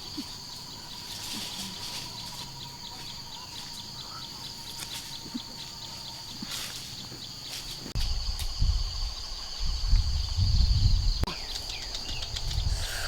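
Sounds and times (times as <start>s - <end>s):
high insect drone: 0.0s - 13.0s.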